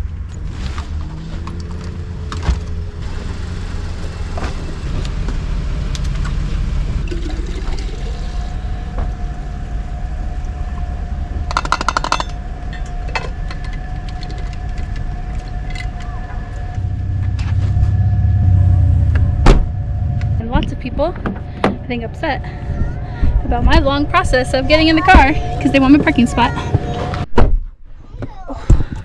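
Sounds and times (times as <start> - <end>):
car engine low rumble: 0.0 - 27.3
clicks and knocks: 11.5 - 16.1.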